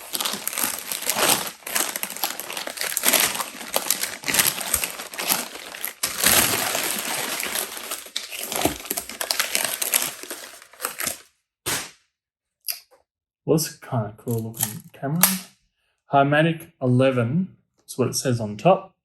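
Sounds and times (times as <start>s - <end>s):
wrapping paper crinkling: 0.0s - 11.3s.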